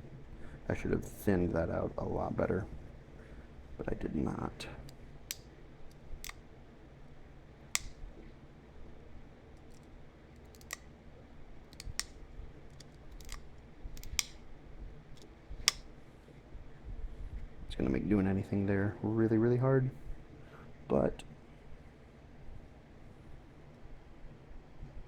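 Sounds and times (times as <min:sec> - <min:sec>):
stone flakes snapping: 0:11.7 - 0:14.4.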